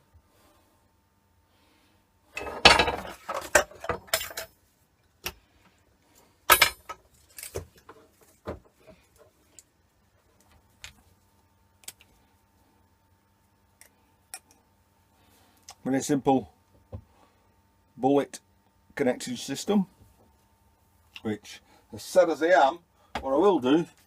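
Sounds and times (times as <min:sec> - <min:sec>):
small metal parts rattling: 0:02.4 - 0:04.6, 0:06.5 - 0:08.4.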